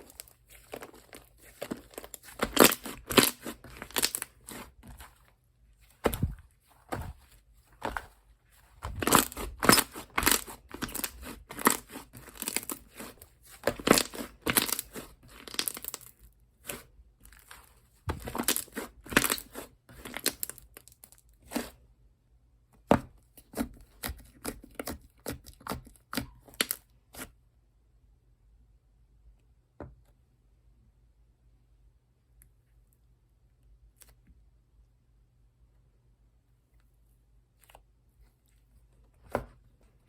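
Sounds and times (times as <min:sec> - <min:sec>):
slime squishing and crackling: 0:00.0 - 0:05.2, 0:05.9 - 0:21.8.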